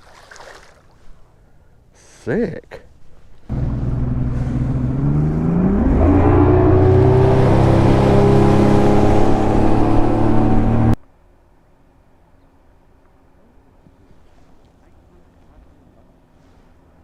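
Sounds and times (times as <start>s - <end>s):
boat motor running: 3.5s - 11.0s.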